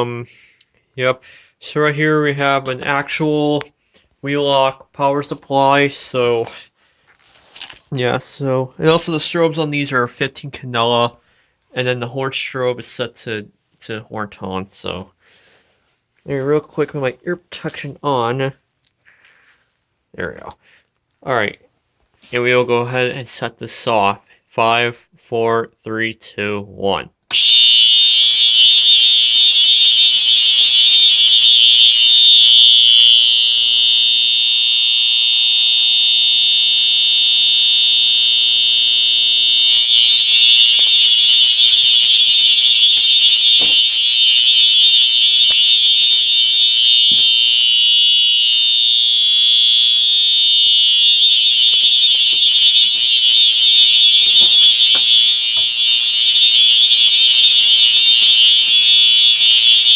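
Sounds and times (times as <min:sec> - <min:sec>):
fire alarm horn: 0:27.3 - 0:59.9.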